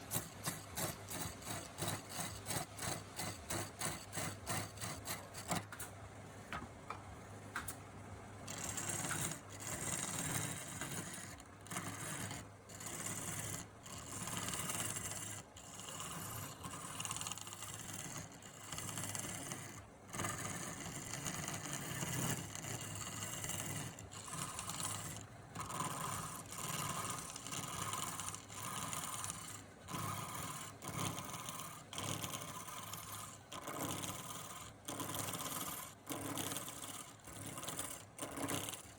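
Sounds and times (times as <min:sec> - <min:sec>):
tool scraping wood: 0:00.0 - 0:05.8, 0:08.4 - 0:38.9.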